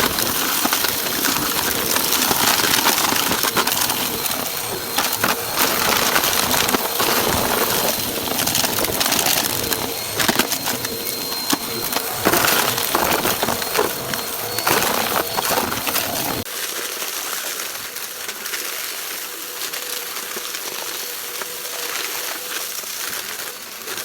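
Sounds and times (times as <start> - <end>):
debris crackling up the nozzle: 0.0 - 16.5
vacuum cleaner running: 0.0 - 16.5.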